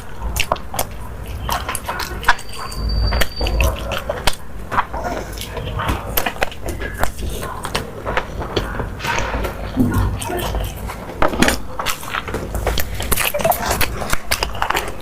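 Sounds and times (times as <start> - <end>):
wet chewing and slurping: 0.0 - 15.0.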